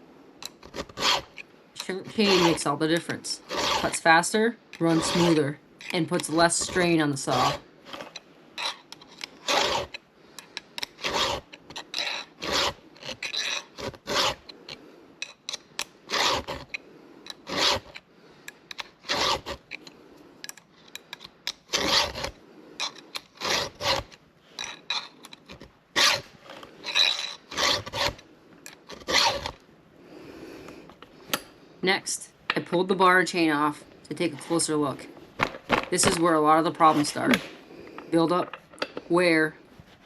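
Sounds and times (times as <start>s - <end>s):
file rasping on saw chain: 0.5s - 10.0s, 10.7s - 18.1s, 18.7s - 19.9s, 21.0s - 28.2s, 28.9s - 29.6s.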